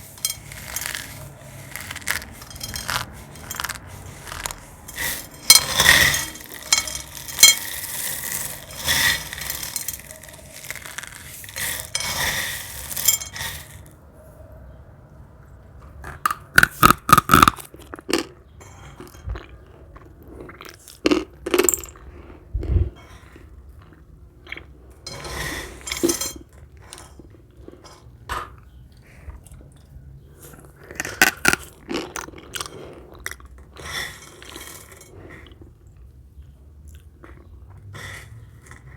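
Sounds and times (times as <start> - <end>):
dried film crunching and crackling: 0.0 - 13.9.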